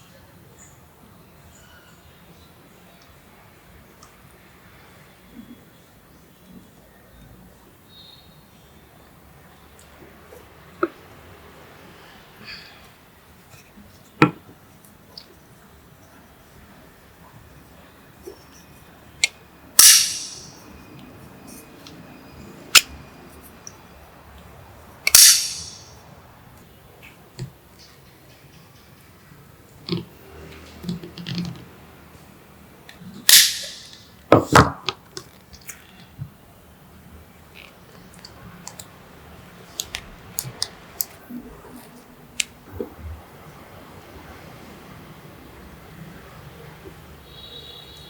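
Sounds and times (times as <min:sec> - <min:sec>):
sharp click: 0:19.8 - 0:20.6, 0:25.1 - 0:26.0, 0:33.3 - 0:34.1.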